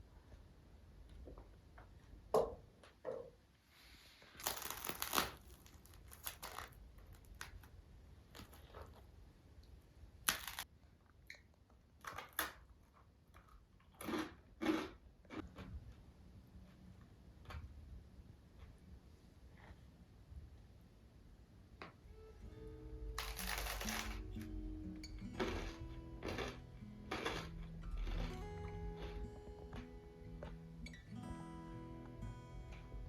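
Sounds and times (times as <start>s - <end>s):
crinkling and tearing rustles: 4.2s - 7.7s, 10.2s - 10.7s, 23.2s - 24.5s.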